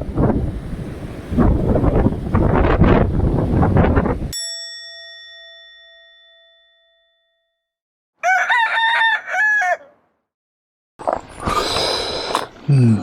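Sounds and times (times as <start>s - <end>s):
bell-like chime ringing: 4.3s - 7.7s
rooster crowing: 8.2s - 10.1s.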